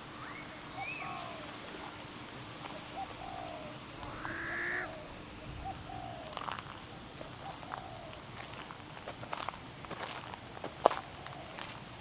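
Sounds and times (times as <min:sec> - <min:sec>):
birds chirping and whistling: 0:00.2 - 0:01.5
harsh bird call: 0:00.2 - 0:01.5, 0:03.0 - 0:06.3.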